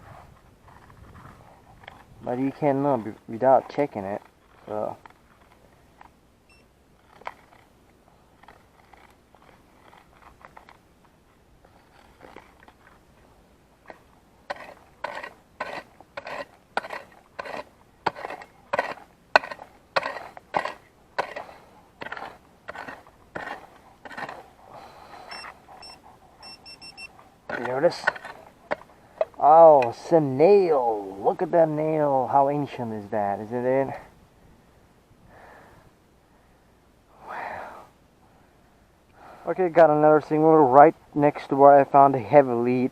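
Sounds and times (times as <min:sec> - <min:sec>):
metal detector beeps: 0:06.5 - 0:06.7, 0:25.3 - 0:27.2
hand digging into soil: 0:13.8 - 0:24.5.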